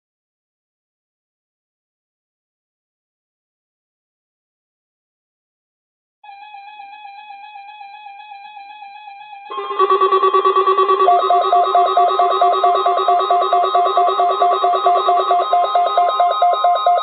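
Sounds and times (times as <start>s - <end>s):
loud warbling alarm: 9.5s - 17.0s
rapid pulsing beeps: 9.5s - 17.0s
warbling electronic tone: 9.5s - 17.0s.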